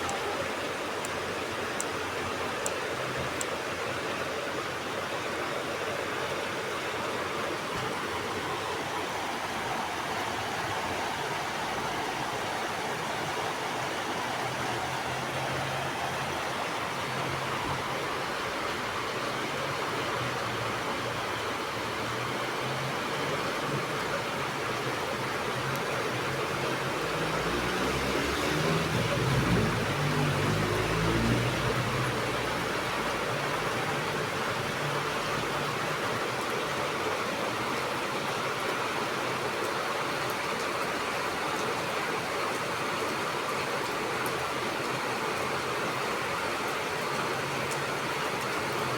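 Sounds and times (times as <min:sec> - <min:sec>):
rain falling: 0:00.0 - 0:48.9
vehicle passing: 0:26.9 - 0:34.1.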